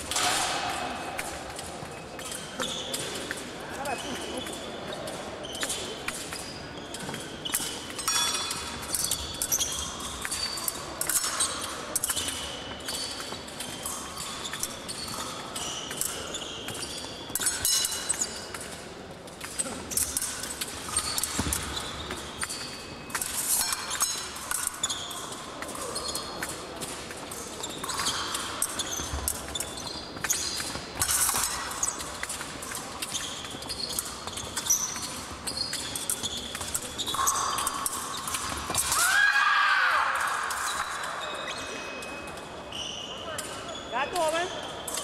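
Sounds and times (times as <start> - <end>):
shoes stamping and squeaking: 1.8 - 18.5, 20.8 - 24.1, 24.8 - 26.5, 27.6 - 39.1.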